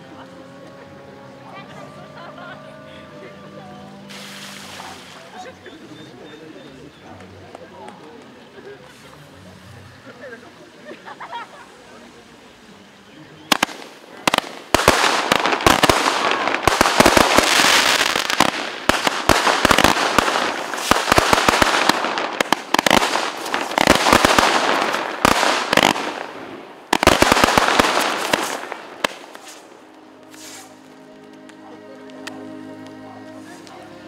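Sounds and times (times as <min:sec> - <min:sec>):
fireworks bangs and crackling: 0:13.5 - 0:31.4.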